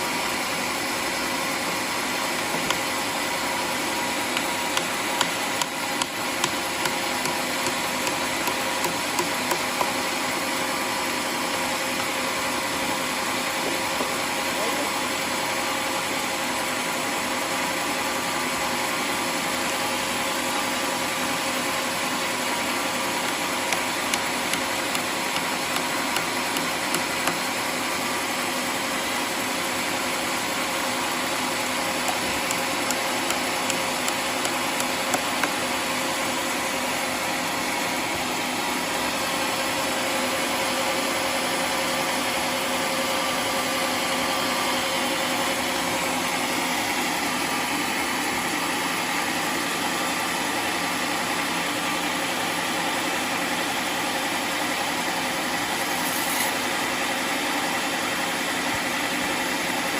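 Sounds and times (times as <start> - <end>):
sawmill sawing wood: 0.0 - 17.3, 19.3 - 46.6.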